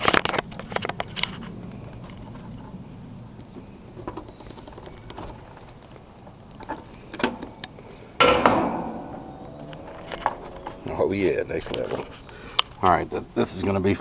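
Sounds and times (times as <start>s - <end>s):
loud sharp clack with ringing: 8.2s - 12.1s.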